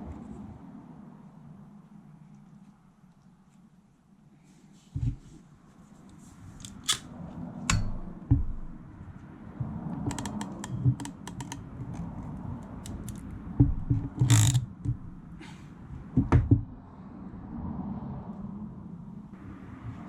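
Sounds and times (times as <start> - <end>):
small tool clicks: 6.6 - 7.1, 10.0 - 13.3, 14.2 - 14.7
knocks: 7.7 - 8.9, 13.6 - 15.3, 16.2 - 16.7.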